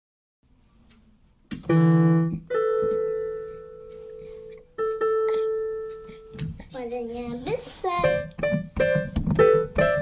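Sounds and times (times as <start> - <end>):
electronic keyboard piano notes: 1.5 - 6.5, 7.9 - 10.0.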